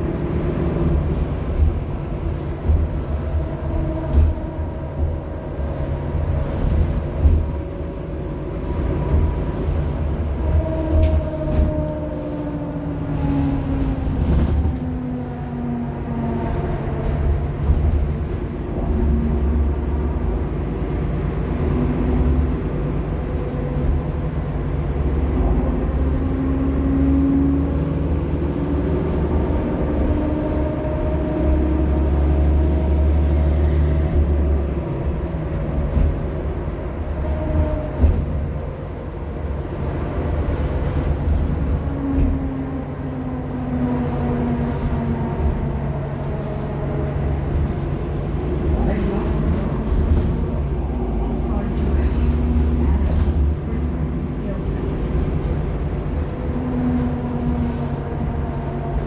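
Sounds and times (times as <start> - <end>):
bus engine rumbling: 0.0 - 59.0.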